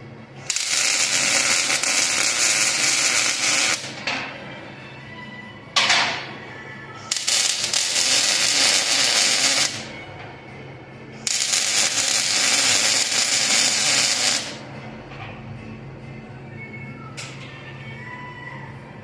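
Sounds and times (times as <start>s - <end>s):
welding arc crackling: 0.4s - 4.0s, 7.1s - 9.9s, 11.3s - 14.6s.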